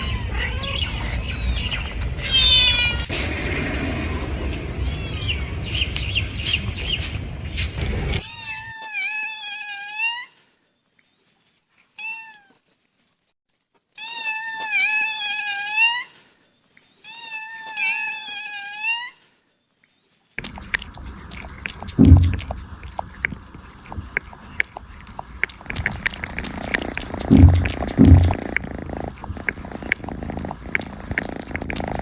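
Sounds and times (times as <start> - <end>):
kitten meowing: 20.4 - 32.0
low thumps: 20.4 - 32.0
scattered clicks: 20.4 - 32.0
steady hiss: 20.4 - 32.0.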